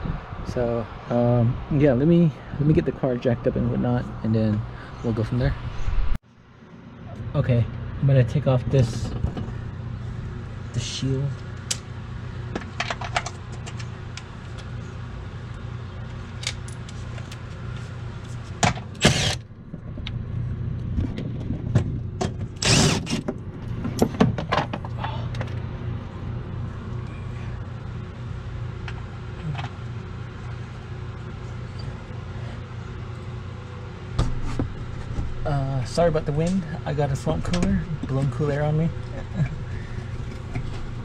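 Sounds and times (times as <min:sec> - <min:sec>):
cooler fan humming: 0:06.3 - 0:41.0.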